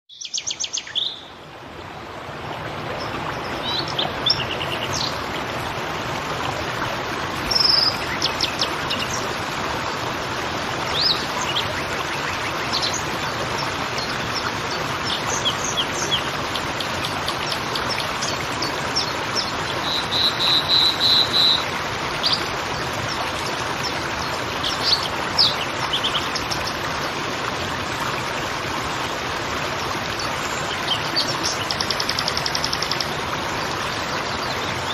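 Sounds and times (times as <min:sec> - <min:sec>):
creek babbling: 0:00.1 - 0:34.9
small birds chirping: 0:30.7 - 0:33.1.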